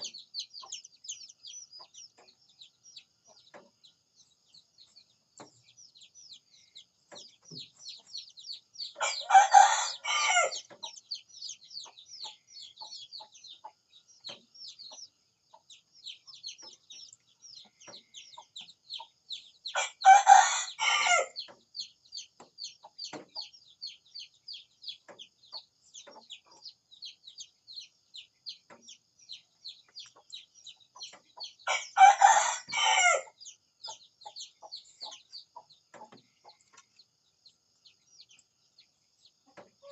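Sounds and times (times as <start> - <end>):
small birds twittering: 0.0 - 39.9
rooster crowing: 9.0 - 10.6, 19.8 - 21.4, 31.7 - 33.3.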